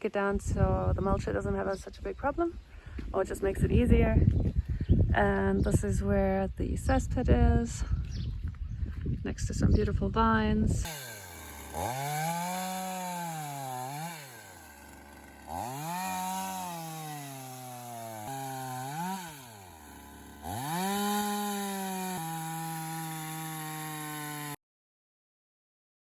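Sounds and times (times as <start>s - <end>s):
chainsaw engine revving: 10.8s - 24.6s.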